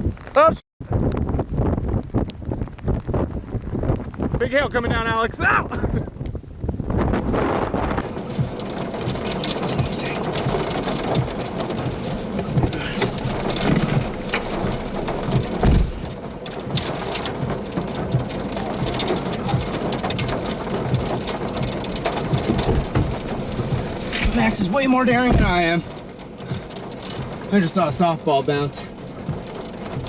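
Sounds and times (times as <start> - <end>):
hailstones pelting down: 0.2 - 30.0
heavy thump: 10.6 - 16.2, 20.9 - 26.6.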